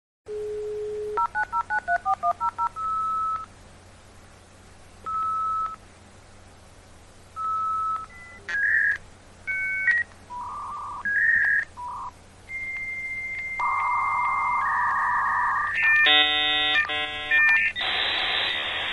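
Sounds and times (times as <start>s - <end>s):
touch-tone dialing: 1.2s - 3.4s
steady high tone: 12.5s - 18.9s.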